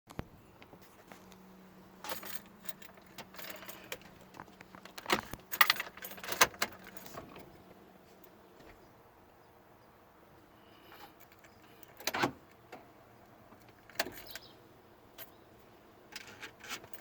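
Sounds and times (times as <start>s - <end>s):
keys jangling: 2.0s - 7.4s, 13.8s - 14.5s.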